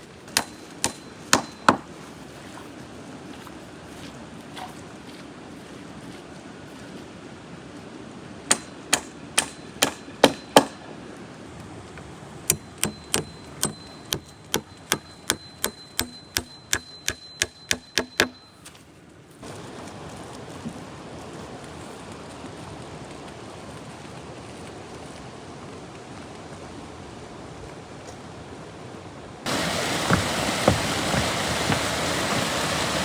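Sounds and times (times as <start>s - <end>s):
hammer striking nails: 0.3s - 2.0s, 8.5s - 10.8s, 12.5s - 18.5s
metal ringing: 0.3s - 2.0s, 8.5s - 11.0s, 12.5s - 18.7s.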